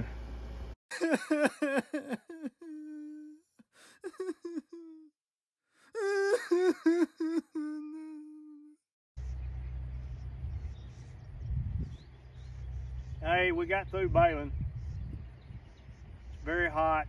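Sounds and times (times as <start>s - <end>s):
man humming a tune: 1.0s - 3.4s, 4.0s - 5.1s, 6.0s - 8.8s.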